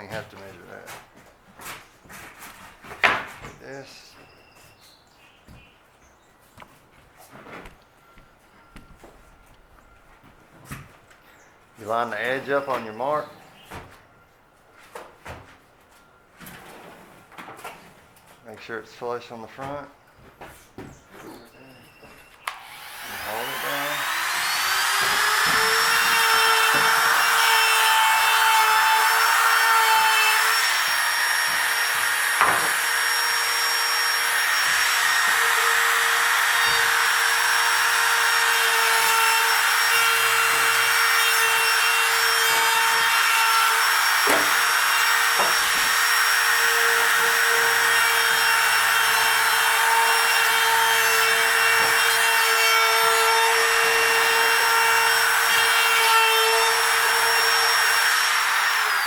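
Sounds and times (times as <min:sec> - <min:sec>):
electric router whining: 0:22.4 - 0:59.0
router knocking against template: 0:32.4 - 0:32.8.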